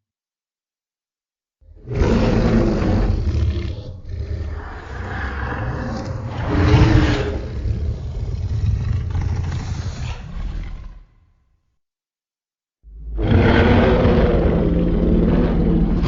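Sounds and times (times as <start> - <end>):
deep monster roar: 1.7 - 11.3, 13.0 - 16.0.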